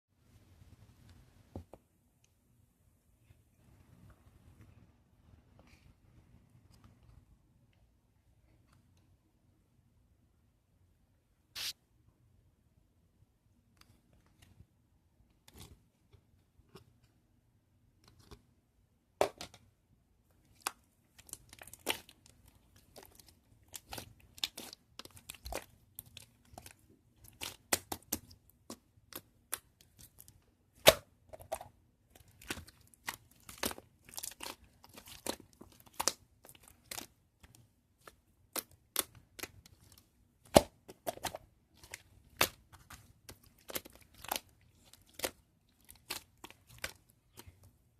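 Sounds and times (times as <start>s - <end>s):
slime popping and crackling: 20.5s - 47.6s.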